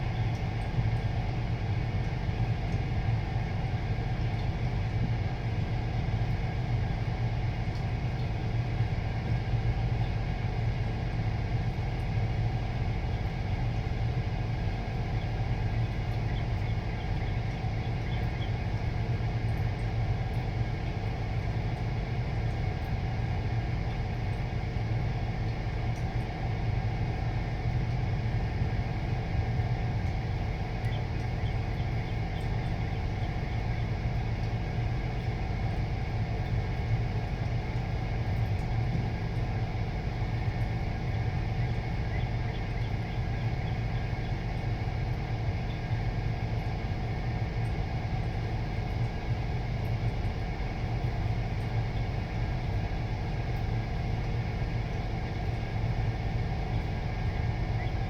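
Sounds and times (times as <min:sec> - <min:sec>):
low mechanical hum: 0:00.0 - 0:58.0
small birds chirping: 0:14.5 - 0:20.5, 0:30.1 - 0:35.8, 0:40.2 - 0:46.0, 0:54.6 - 0:58.0.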